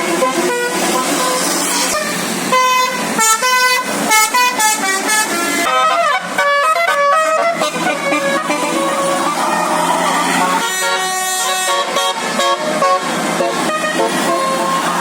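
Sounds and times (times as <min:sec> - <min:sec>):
bus air horn playing a tune: 0:00.0 - 0:15.0.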